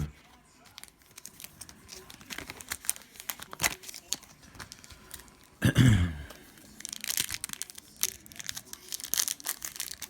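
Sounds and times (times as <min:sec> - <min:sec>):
foil wrapper crinkling: 0:00.0 - 0:05.6, 0:06.3 - 0:10.0
trading cards handled and flipped: 0:00.0 - 0:05.6.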